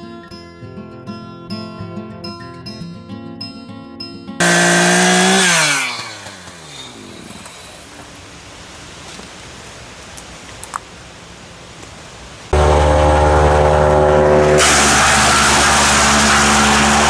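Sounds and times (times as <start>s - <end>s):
chainsaw revving and idling: 4.4s - 8.0s, 12.6s - 17.0s
guitar music: 12.6s - 17.0s.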